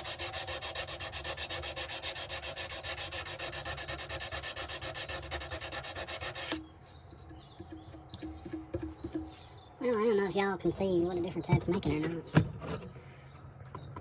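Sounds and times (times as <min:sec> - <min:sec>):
sandpaper rubbing on knife: 0:00.0 - 0:06.6.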